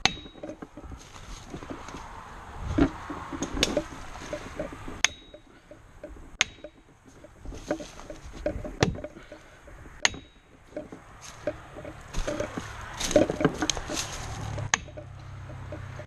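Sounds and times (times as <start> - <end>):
rustling handling noise: 0.0 - 16.0
sharp knocks: 0.0 - 16.0
high metallic ring: 3.6 - 8.3.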